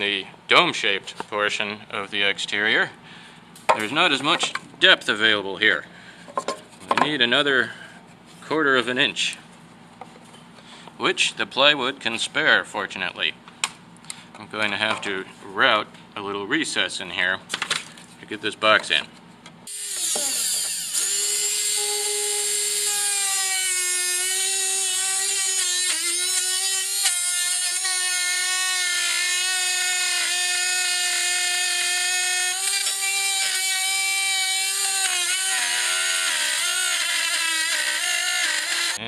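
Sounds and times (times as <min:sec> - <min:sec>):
electric router high whine: 0:19.7 - 0:39.0.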